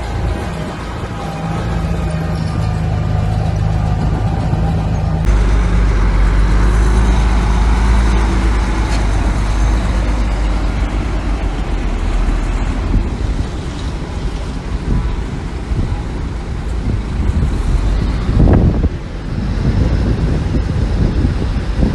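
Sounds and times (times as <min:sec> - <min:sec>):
diesel engine running under load: 0:00.0 - 0:21.9.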